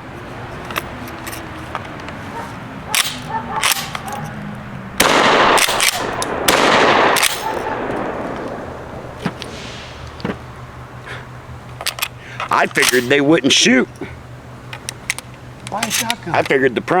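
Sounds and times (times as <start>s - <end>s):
gun handling clicks: 0.5s - 2.3s, 2.9s - 10.4s, 11.6s - 13.2s, 14.6s - 16.6s
shotgun shots: 5.0s - 10.0s.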